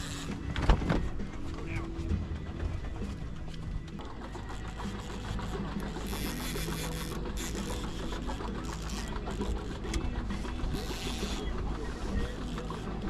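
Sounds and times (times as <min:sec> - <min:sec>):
low rumble: 0:00.1 - 0:06.0.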